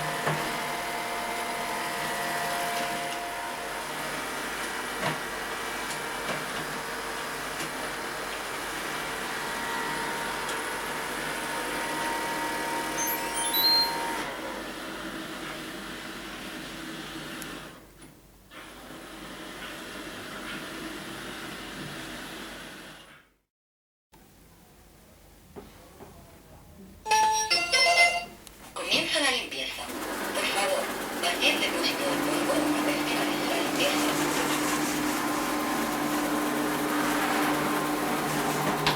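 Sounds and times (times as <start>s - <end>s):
robot vacuum cleaner running: 0.0s - 17.8s, 29.8s - 38.9s
rising run of high tones: 12.0s - 14.3s.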